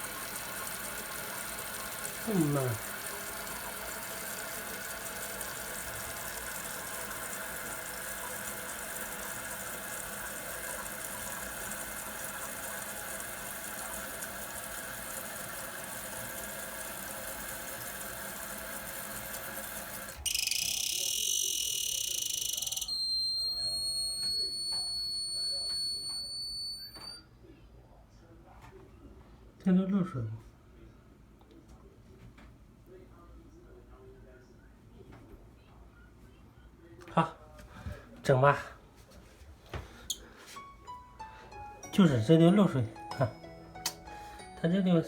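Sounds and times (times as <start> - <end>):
toilet tank refilling hiss: 0.0 - 22.9
fill valve warbling squeal: 20.2 - 27.2
high steady whistle: 20.3 - 27.2.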